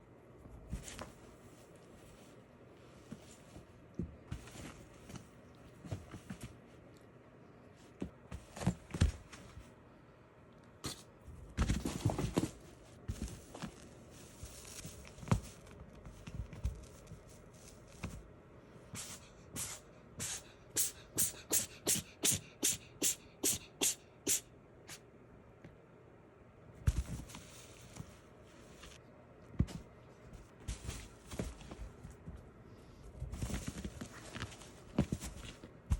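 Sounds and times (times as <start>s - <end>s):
cat sneezing: 19.0s - 25.0s.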